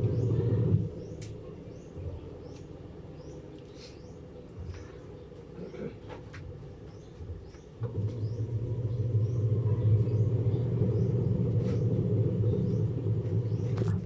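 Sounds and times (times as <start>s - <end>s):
washing machine motor humming: 0.0s - 1.3s, 7.8s - 14.0s.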